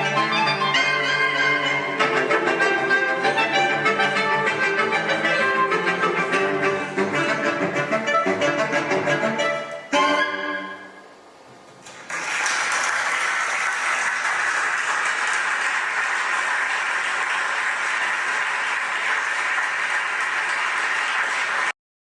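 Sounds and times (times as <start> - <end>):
audience applause: 11.9 - 21.8.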